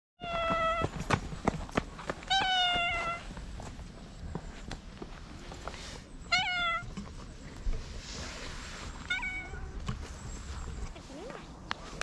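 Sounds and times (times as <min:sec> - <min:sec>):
cat meowing: 0:02.3 - 0:03.2, 0:06.3 - 0:06.9, 0:09.1 - 0:09.8.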